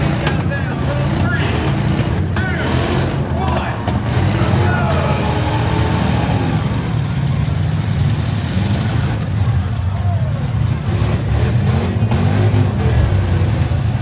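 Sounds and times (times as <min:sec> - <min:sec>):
car engines rumbling: 0:00.0 - 0:14.0.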